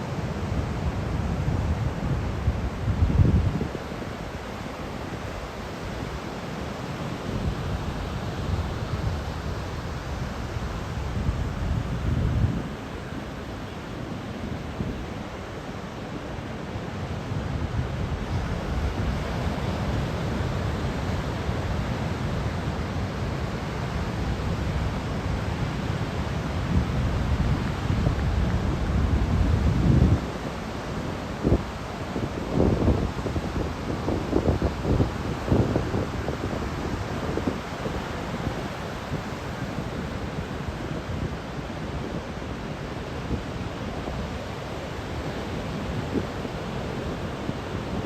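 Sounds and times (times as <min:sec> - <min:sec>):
ocean surf: 0:00.0 - 0:48.0
wind buffeting microphone: 0:07.3 - 0:13.5.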